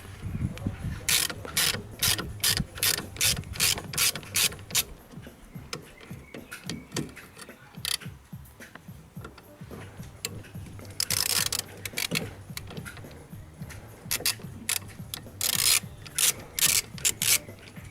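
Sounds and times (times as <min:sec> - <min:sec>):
ratchet clicking: 0:00.0 - 0:17.9.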